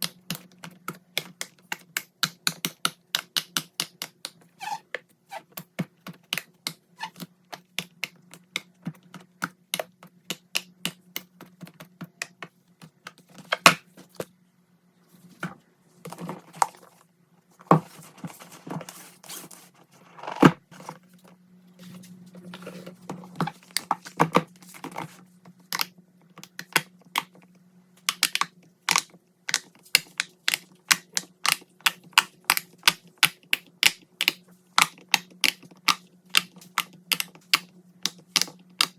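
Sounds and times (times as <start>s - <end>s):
low steady hum: 0.0s - 38.9s
rustling handling noise: 15.0s - 25.5s.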